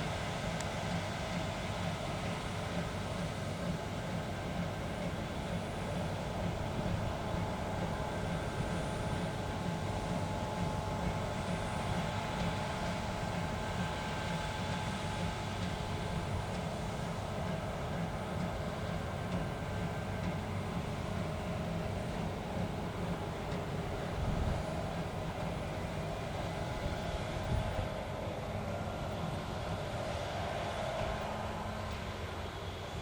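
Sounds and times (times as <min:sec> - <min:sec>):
diesel machinery rumbling: 0:00.0 - 0:33.0
faint steady whine: 0:00.0 - 0:33.0.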